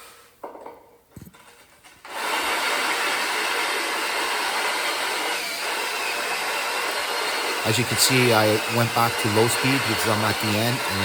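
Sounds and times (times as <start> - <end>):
electric drill cutting stone tile: 2.0 - 11.0.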